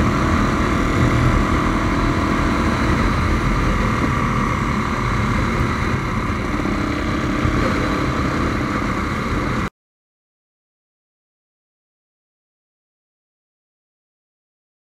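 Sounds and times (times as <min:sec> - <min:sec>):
motorcycle engine running: 0:00.0 - 0:09.7.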